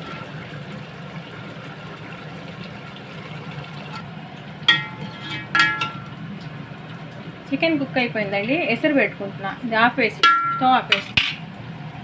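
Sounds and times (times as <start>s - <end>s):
metal cookware clanks: 4.7s - 6.1s, 10.2s - 11.4s.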